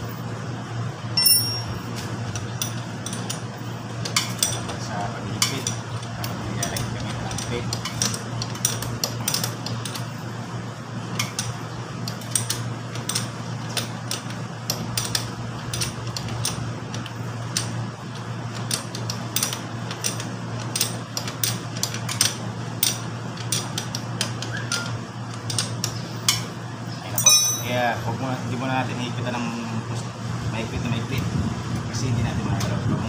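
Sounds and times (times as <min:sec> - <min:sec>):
low hum: 0:01.1 - 0:03.7
wrench clinking against bolts: 0:01.2 - 0:02.0, 0:02.6 - 0:03.5, 0:04.1 - 0:04.8, 0:27.2 - 0:28.0.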